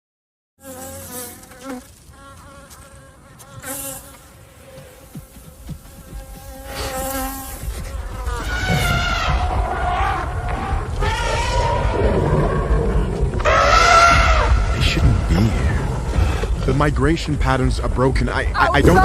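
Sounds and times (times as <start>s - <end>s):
insects buzzing: 0.6s - 16.7s
low rumble: 7.3s - 19.0s.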